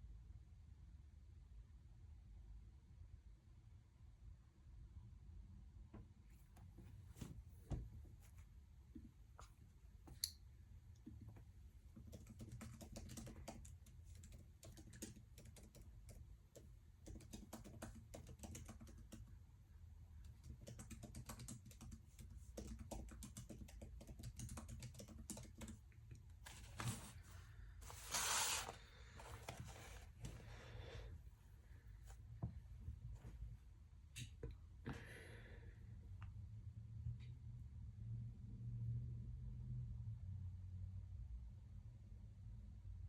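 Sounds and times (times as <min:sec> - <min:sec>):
typing on keyboard: 0:11.9 - 0:19.3, 0:20.2 - 0:25.8.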